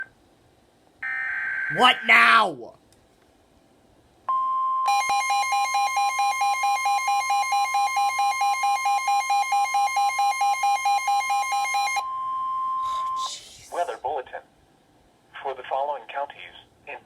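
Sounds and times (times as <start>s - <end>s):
steady high alert tone: 1.7s - 2.7s, 12.8s - 13.9s.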